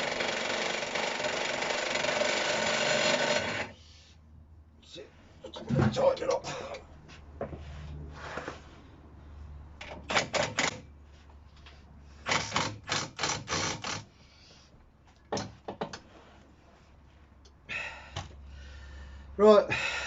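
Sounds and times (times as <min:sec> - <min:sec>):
hand ratchet clicking: 0:00.0 - 0:03.8, 0:09.8 - 0:10.8, 0:12.2 - 0:14.1.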